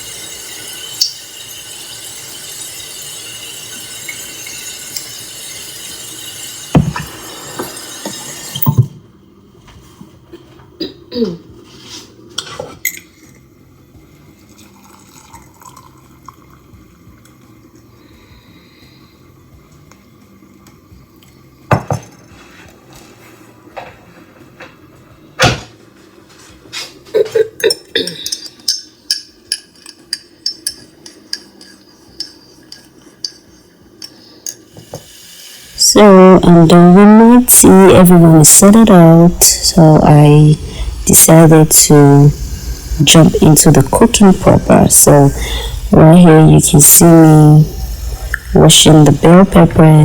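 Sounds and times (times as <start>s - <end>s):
faint steady hum: 27.1s - 50.0s
crockery and cutlery clinking: 27.4s - 34.7s.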